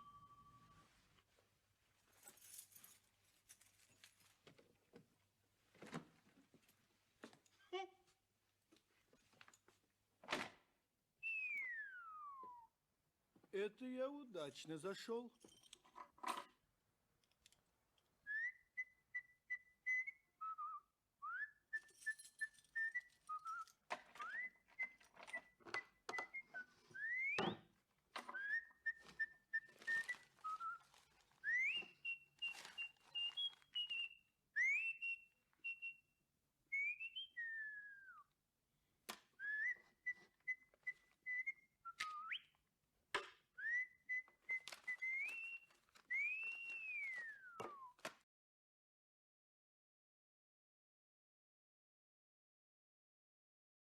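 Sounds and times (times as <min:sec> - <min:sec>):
man whistling a tune: 0:11.2 - 0:12.8, 0:18.3 - 0:27.6, 0:28.3 - 0:36.1, 0:36.8 - 0:38.3, 0:39.4 - 0:42.5, 0:43.6 - 0:48.0
objects clicking and rustling: 0:15.4 - 0:16.6, 0:21.8 - 0:34.1, 0:44.5 - 0:48.2.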